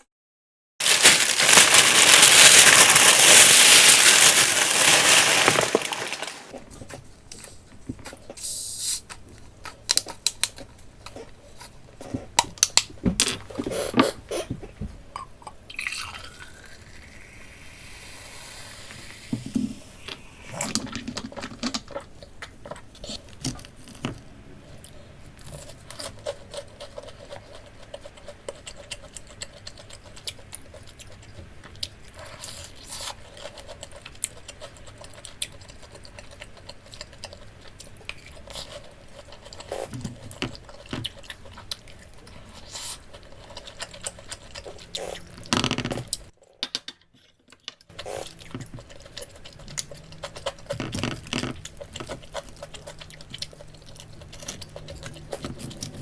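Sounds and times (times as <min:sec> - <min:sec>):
crunchy chewing: 0:20.0 - 0:46.3, 0:47.2 - 0:56.0.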